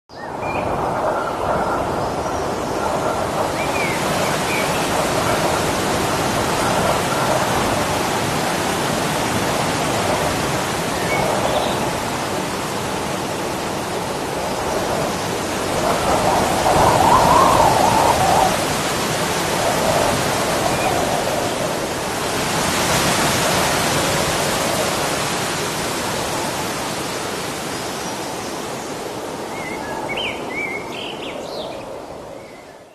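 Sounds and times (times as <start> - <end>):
waterfall rushing: 2.6 - 28.6.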